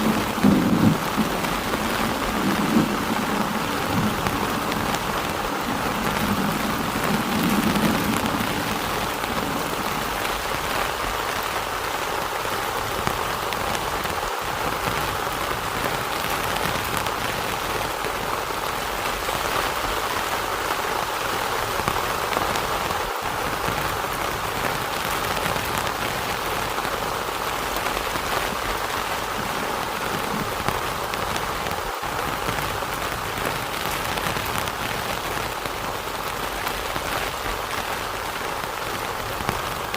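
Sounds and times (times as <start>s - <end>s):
low rumble of thunder: 0.0s - 11.8s, 28.0s - 35.6s
heavy rain falling: 0.0s - 39.9s.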